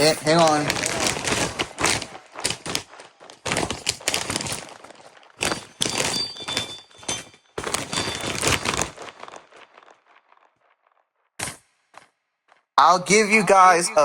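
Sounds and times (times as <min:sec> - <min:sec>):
packaging crinkling and tearing: 0:00.0 - 0:10.9.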